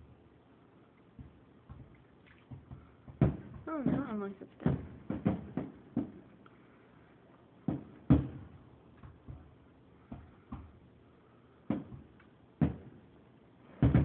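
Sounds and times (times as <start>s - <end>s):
muffled fireworks booms: 2.5s - 6.3s, 7.6s - 10.8s, 11.6s - 13.1s, 13.7s - 14.0s.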